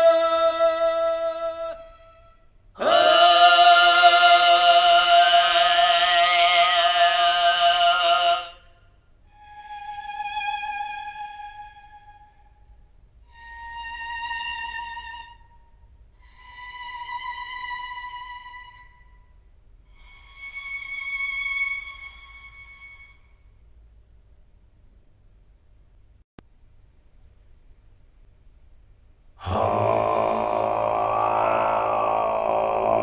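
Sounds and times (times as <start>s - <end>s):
bowed fiddle notes: 0.0s - 5.6s.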